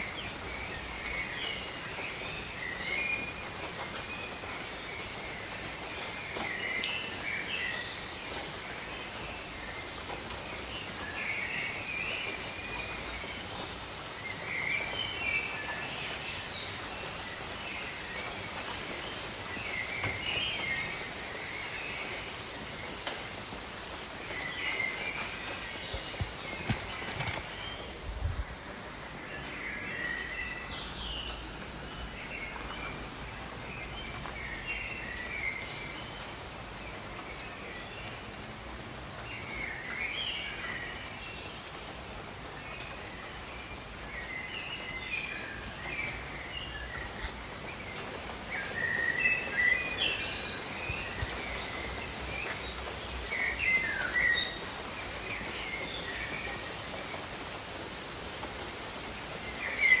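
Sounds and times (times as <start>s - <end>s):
rain hiss: 0.0s - 60.0s
birds chirping: 24.2s - 36.4s.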